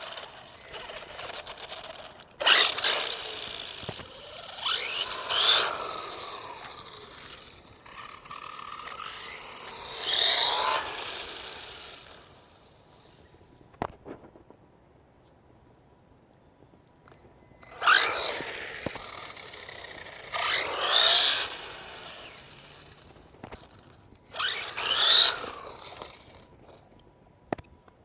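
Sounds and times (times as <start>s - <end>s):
electric motor whining: 0.0s - 12.4s, 17.6s - 26.5s.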